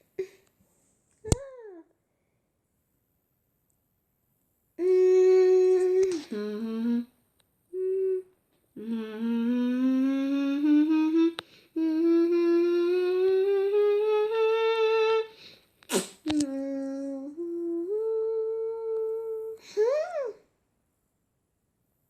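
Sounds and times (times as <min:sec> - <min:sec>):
person humming long notes: 0:04.8 - 0:15.4, 0:16.3 - 0:20.4.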